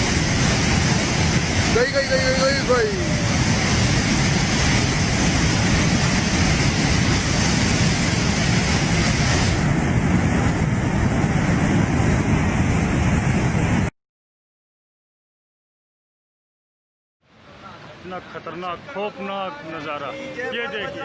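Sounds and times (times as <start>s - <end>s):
floodwater rushing: 0.0s - 13.9s.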